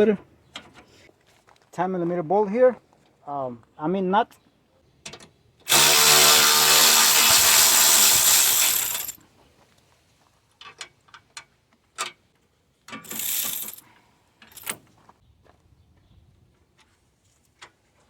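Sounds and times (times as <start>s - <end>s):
cordless power tool running: 5.7s - 9.2s
small metal clicks: 12.9s - 14.8s.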